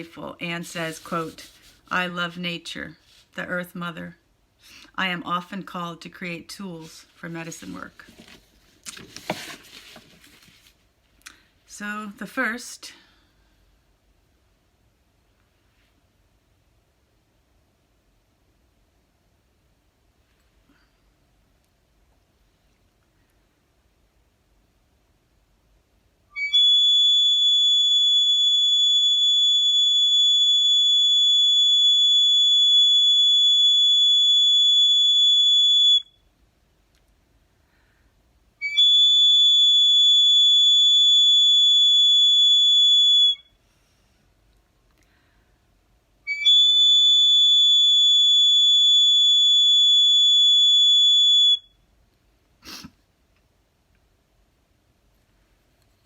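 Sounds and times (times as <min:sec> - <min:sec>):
shrill bone whistle notes: 0:26.3 - 0:36.2, 0:38.6 - 0:43.6, 0:46.3 - 0:51.8.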